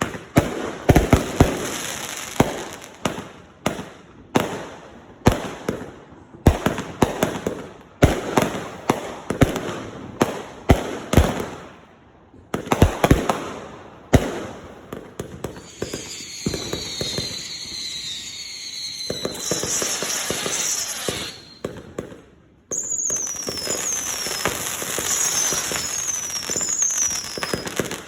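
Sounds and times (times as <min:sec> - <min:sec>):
fireworks bangs with crackling: 0:00.0 - 0:28.0
whistling firework shells: 0:15.3 - 0:22.1, 0:22.7 - 0:28.0.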